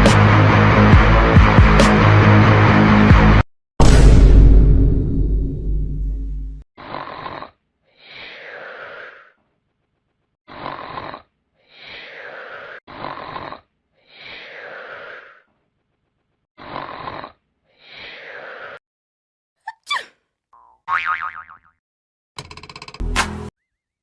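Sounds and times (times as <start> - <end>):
person snoring: 6.8 - 9.4, 10.5 - 15.5, 16.6 - 18.8.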